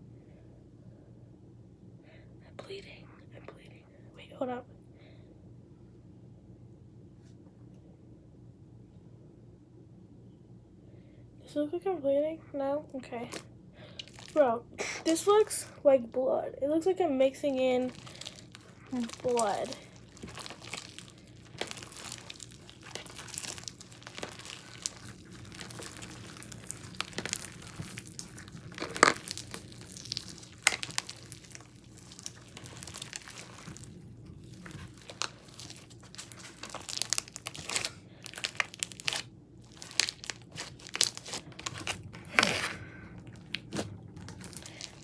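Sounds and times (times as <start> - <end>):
slime squishing and popping: 14.0 - 14.4, 17.8 - 45.0.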